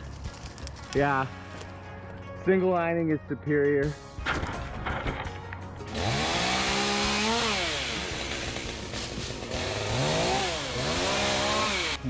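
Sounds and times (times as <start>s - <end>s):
chainsaw revving: 5.9s - 12.0s.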